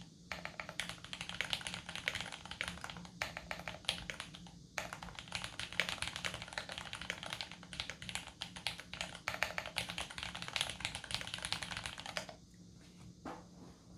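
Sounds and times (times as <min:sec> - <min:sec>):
typing on mechanical keyboard: 0:00.3 - 0:12.4.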